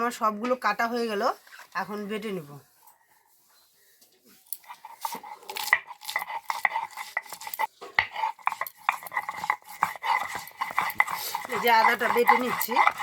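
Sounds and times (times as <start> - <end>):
stone knocking and scraping on stone: 4.6 - 13.0.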